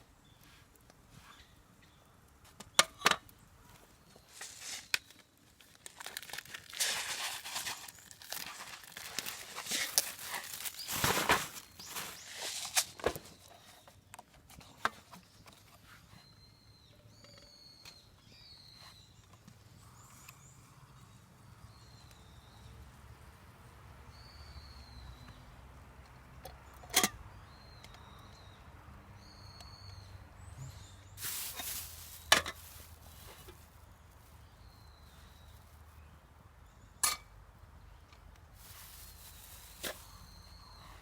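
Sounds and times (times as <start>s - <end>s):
birds chirping: 9.0s - 14.0s.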